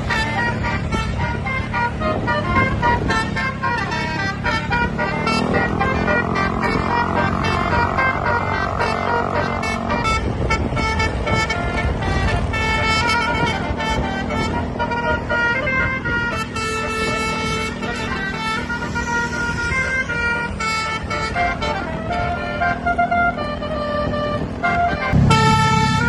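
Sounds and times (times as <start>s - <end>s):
bus engine hum: 0.0s - 26.0s
multi-tone air horn melody: 0.0s - 26.0s.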